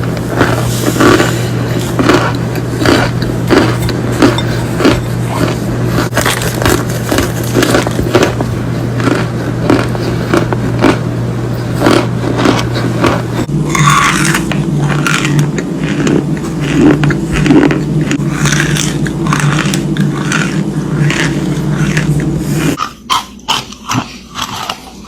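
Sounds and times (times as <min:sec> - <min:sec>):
steady low hum: 0:00.0 - 0:25.0
brittle material crunching: 0:00.3 - 0:11.0.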